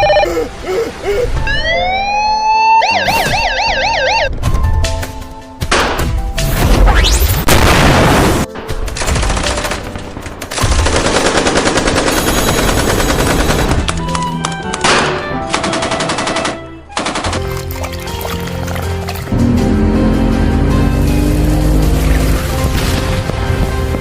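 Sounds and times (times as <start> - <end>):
music: 0.0 - 24.0
machine-gun fire: 10.6 - 13.8.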